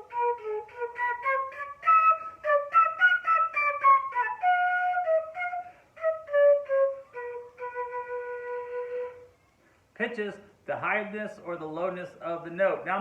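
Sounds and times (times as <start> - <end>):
solo flute melody: 0.0 - 9.6.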